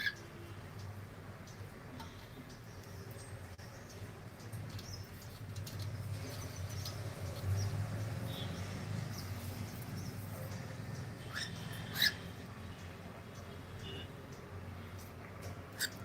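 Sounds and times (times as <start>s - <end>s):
cockatiels chirping: 11.2s - 12.2s, 15.8s - 16.0s.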